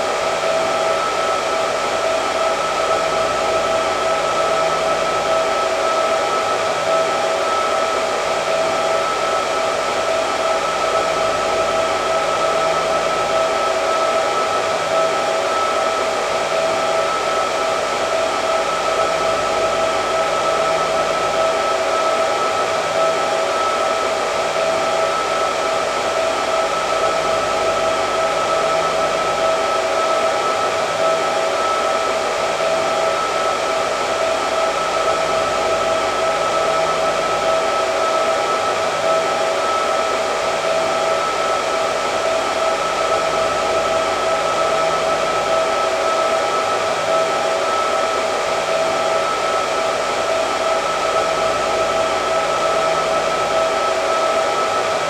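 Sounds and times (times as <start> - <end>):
hair dryer running: 0.0 - 55.0.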